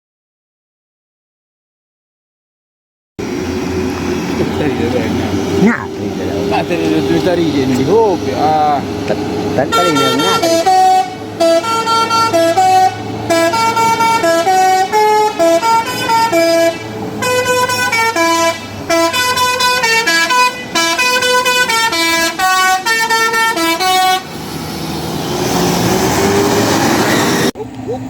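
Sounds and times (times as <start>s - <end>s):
musical bus air horn: 9.6s - 24.4s.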